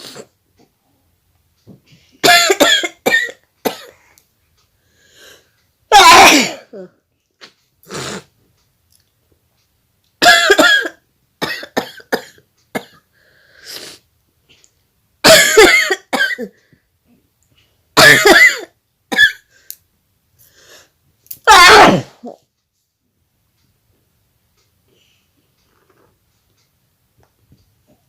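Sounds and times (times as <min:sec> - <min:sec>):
woman sneezing: 0:05.9 - 0:06.9, 0:21.5 - 0:22.4.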